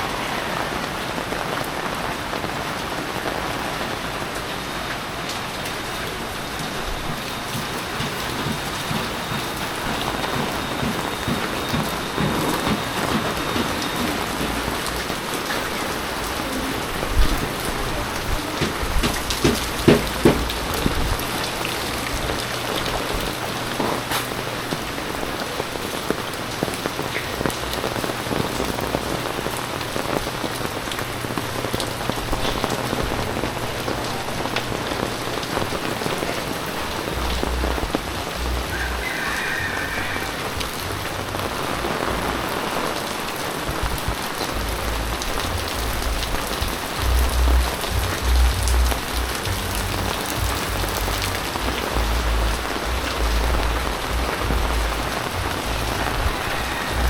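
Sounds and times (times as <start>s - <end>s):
heavy rain: 0.0s - 57.0s
sharp knocks or drips: 7.1s - 14.6s, 18.6s - 20.6s.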